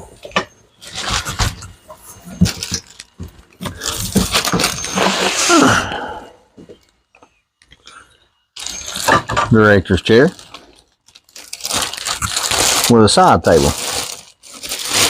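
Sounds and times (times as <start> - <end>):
cardboard rustling and scraping: 0.8 - 5.6
short falling squeal: 4.4 - 6.3.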